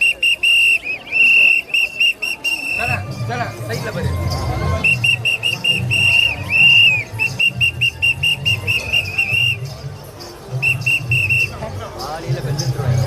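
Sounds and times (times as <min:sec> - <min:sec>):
whistle blasts: 0:00.0 - 0:03.1, 0:04.8 - 0:09.7, 0:10.6 - 0:11.6.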